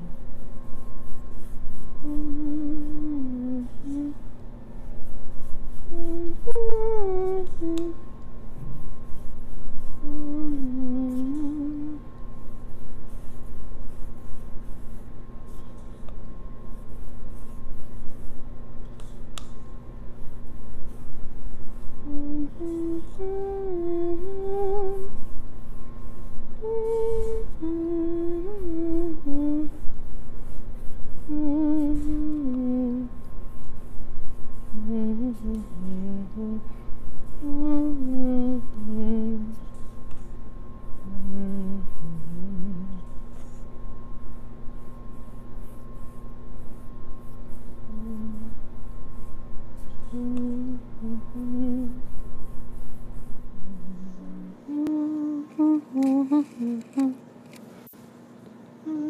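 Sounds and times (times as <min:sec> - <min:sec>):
woman humming: 0:00.0 - 0:00.4, 0:02.0 - 0:04.3, 0:05.7 - 0:08.1, 0:09.9 - 0:12.1, 0:21.9 - 0:25.2, 0:26.6 - 0:29.9, 0:31.2 - 0:33.2, 0:34.7 - 0:36.7, 0:37.3 - 0:39.7, 0:41.0 - 0:43.2, 0:47.8 - 0:48.7, 0:50.0 - 0:52.1, 0:53.5 - 0:57.3, 0:58.8 - 0:59.0.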